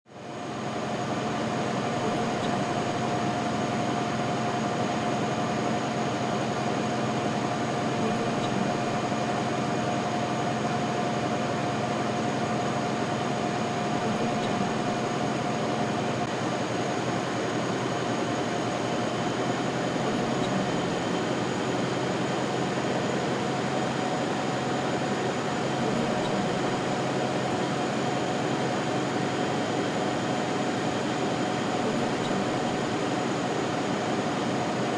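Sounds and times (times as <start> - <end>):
constant machine whine: 0.1 - 34.9
printing presses clattering: 13.0 - 34.9.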